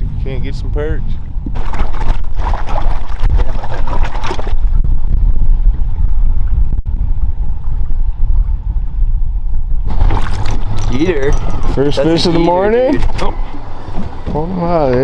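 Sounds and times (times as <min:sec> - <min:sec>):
wind rumbling on microphone: 0:00.0 - 0:15.0
water lapping against boat hull: 0:01.1 - 0:04.8, 0:09.9 - 0:15.0.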